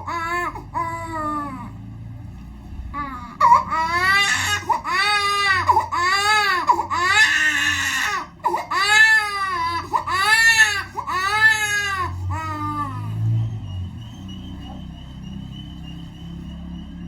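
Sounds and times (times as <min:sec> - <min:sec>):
baby crying: 0:00.0 - 0:01.8, 0:02.8 - 0:13.2.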